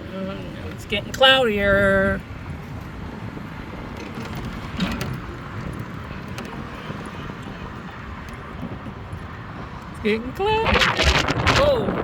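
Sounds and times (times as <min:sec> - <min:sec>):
vehicle running noise: 0:00.0 - 0:12.0
wind rushing: 0:10.5 - 0:12.0.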